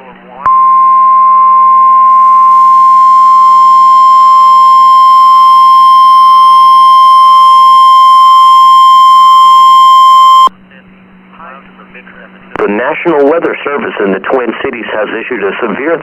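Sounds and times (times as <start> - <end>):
loud steady alarm tone: 0.5 - 10.5.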